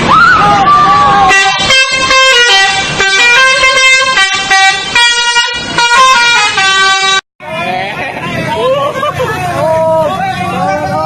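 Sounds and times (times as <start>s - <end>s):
musical bus horn playing tune: 1.3s - 7.3s.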